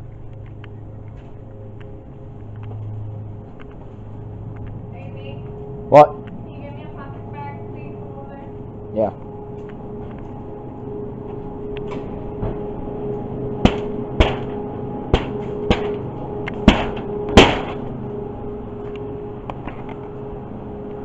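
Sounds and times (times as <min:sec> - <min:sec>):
electrical hum: 0:00.0 - 0:21.0
sharp knocks: 0:13.6 - 0:16.0, 0:16.6 - 0:17.8.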